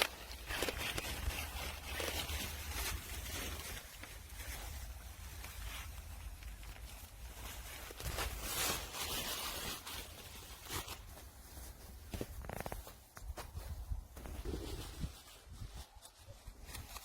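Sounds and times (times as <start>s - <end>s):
tent fabric rustling: 0.0s - 17.0s.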